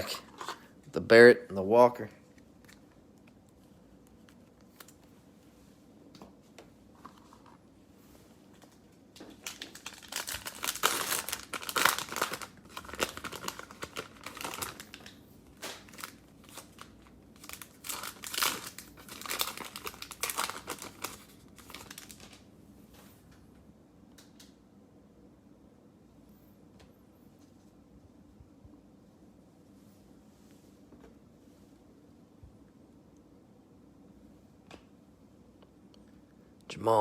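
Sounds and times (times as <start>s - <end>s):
plastic wrapper tearing and crinkling: 9.3s - 22.4s.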